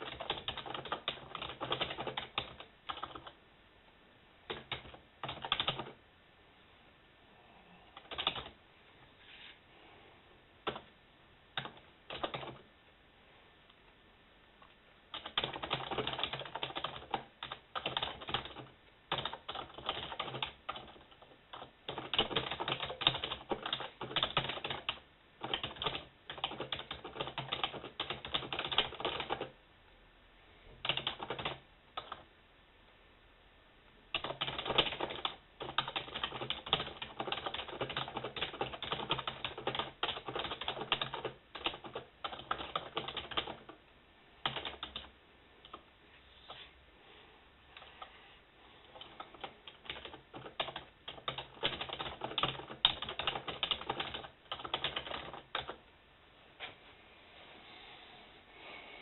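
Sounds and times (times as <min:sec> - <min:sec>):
keyboard typing: 0:00.0 - 0:03.4, 0:04.5 - 0:06.0, 0:08.0 - 0:08.6, 0:10.6 - 0:10.9, 0:11.6 - 0:12.7, 0:15.1 - 0:29.6, 0:30.8 - 0:32.3, 0:34.1 - 0:43.8, 0:44.4 - 0:45.8, 0:48.8 - 0:55.8.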